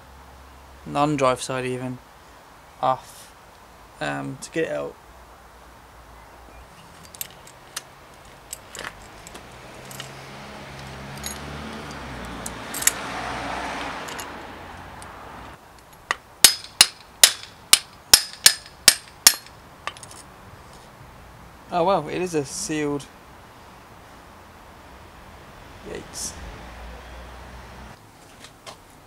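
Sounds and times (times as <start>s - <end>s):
metal tools clinking: 6.9s - 13.0s, 14.0s - 14.3s, 15.8s - 20.3s
ringing hammer strikes on metal: 16.4s - 19.5s.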